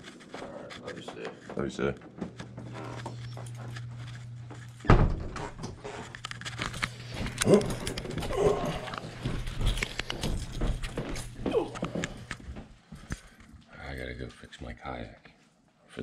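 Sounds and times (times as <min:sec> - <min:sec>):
steady low hum: 0:00.0 - 0:15.3
loud thump: 0:04.9 - 0:05.4.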